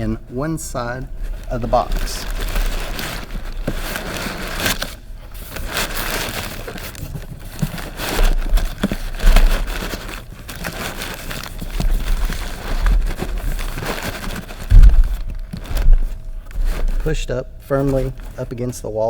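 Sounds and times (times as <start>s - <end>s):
packaging rustling and crinkling: 0.0s - 19.0s
knocks against cardboard box: 14.6s - 17.0s.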